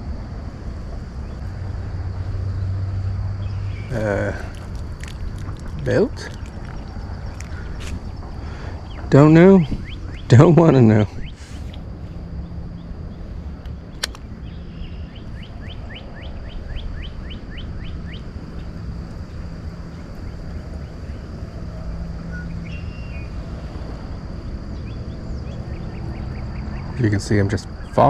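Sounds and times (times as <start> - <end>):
steady low hum: 0.0 - 28.0
bird chirping: 2.5 - 23.4, 24.7 - 28.0
sharp click: 13.6 - 14.3.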